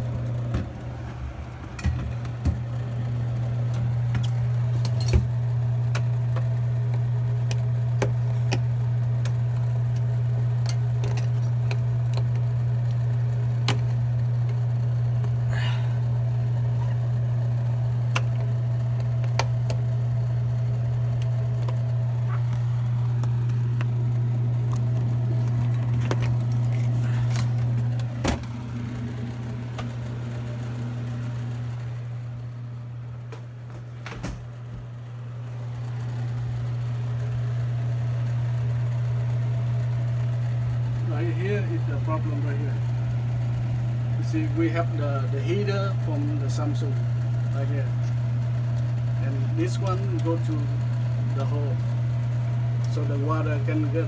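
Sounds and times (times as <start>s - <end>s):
low electrical hum: 0.0s - 54.0s
handling clicks and knocks: 24.6s - 28.7s.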